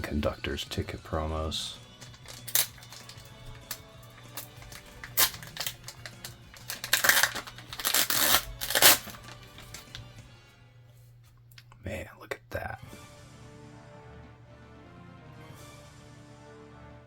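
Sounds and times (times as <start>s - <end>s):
background music: 0.0s - 17.0s
packaging crinkling: 2.0s - 10.1s.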